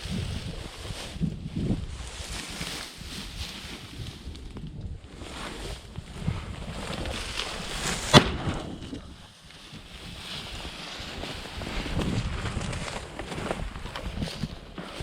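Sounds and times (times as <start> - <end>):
rustling through cover: 0.0 - 4.4, 5.1 - 15.0
wind buffeting microphone: 0.0 - 15.0
sharp crack: 7.1 - 9.1.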